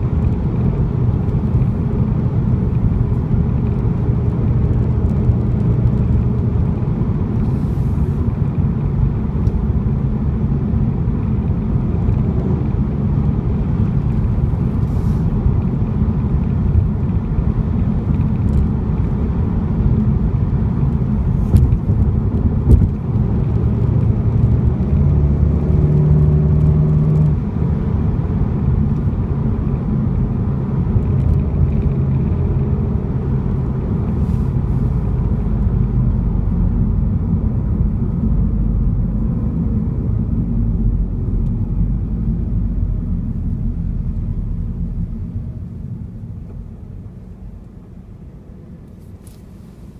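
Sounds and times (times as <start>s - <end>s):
car engine rumbling: 0.0s - 49.9s.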